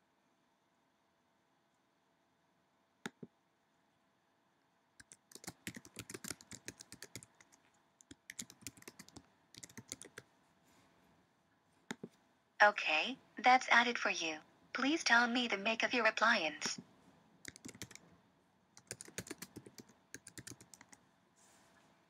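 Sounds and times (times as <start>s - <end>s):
typing on computer keyboard: 5.0s - 10.3s, 17.4s - 18.1s, 18.8s - 21.0s.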